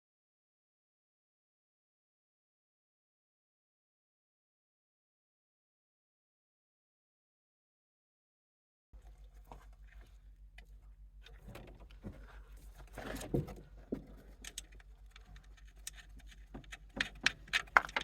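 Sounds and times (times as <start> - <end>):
low steady hum: 9.0 - 18.0.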